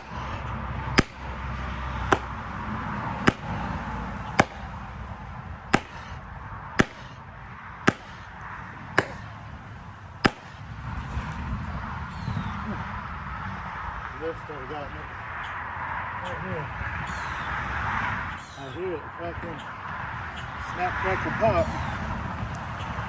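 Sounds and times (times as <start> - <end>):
hammer striking metal wedge: 1.0 - 1.2, 2.1 - 2.4, 3.3 - 3.5, 4.4 - 4.6, 5.8 - 6.1, 6.8 - 7.0, 7.9 - 8.1, 10.3 - 10.5.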